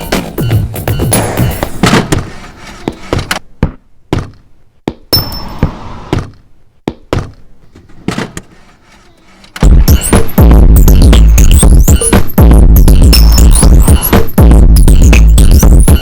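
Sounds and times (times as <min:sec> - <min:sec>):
electronic beat with heavy bass: 0:00.0 - 0:01.8, 0:09.6 - 0:16.0.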